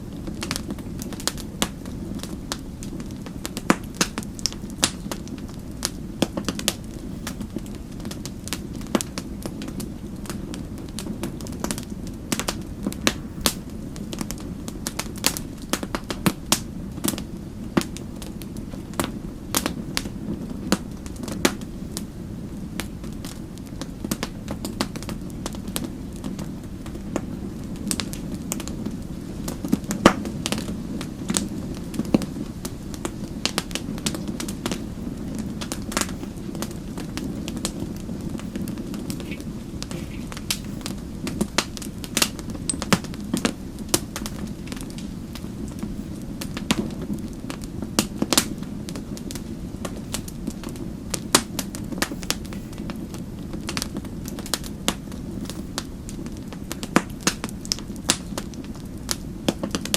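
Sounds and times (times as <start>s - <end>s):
low fire rumble: 0.0s - 59.9s
wood fire crackling: 0.0s - 59.9s.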